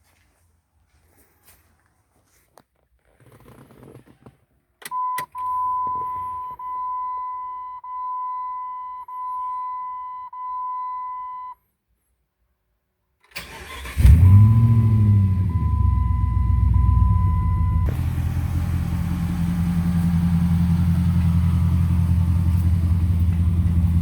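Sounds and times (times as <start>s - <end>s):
dashboard warning chime: 4.9s - 11.6s, 14.2s - 17.9s
car engine cranking and starting: 13.3s - 24.0s.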